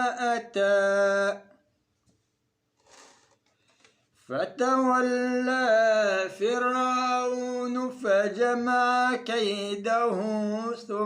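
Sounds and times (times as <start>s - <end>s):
man chanting melodically: 0.0s - 1.5s, 4.3s - 11.0s.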